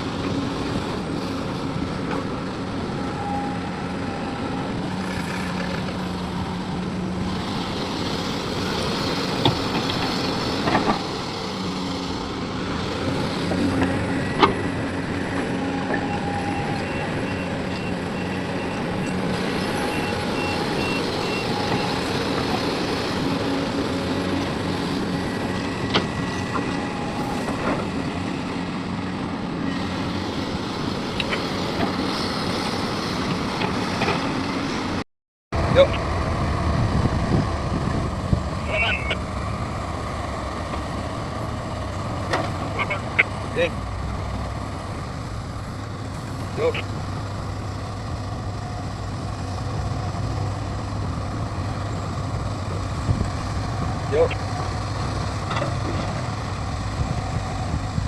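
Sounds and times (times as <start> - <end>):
heavy diesel machinery running: 0.0 - 58.0
reversing alarm beeps: 19.7 - 22.0.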